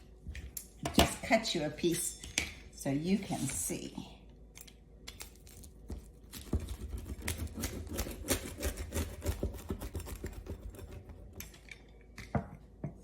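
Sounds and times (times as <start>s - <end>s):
knife crunching through pizza crust: 5.1s - 11.7s.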